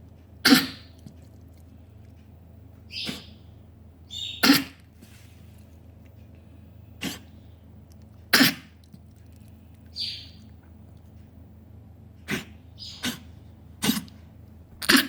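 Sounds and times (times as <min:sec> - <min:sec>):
person coughing: 0:00.5 - 0:00.9.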